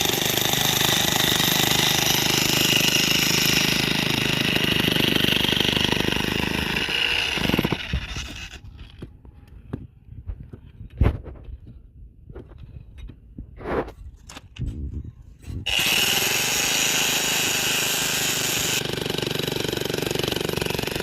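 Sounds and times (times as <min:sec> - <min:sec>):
power drill running: 0:00.0 - 0:08.6, 0:15.7 - 0:21.0.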